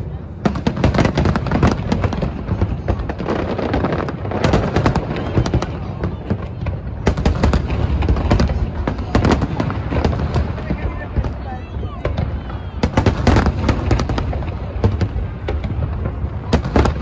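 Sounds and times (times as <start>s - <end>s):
fireworks cracking and banging: 0.0s - 17.0s.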